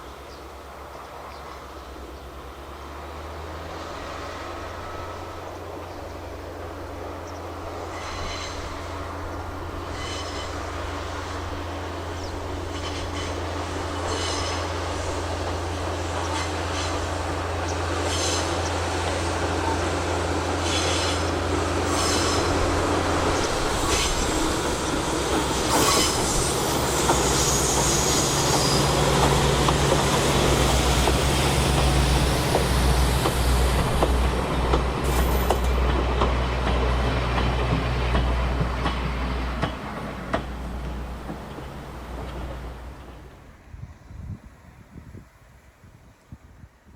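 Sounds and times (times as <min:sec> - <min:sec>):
diesel railcar engine running: 0:00.0 - 0:44.8
high wheel squeal: 0:07.7 - 0:09.2, 0:09.8 - 0:11.0, 0:18.0 - 0:18.7, 0:20.6 - 0:29.4.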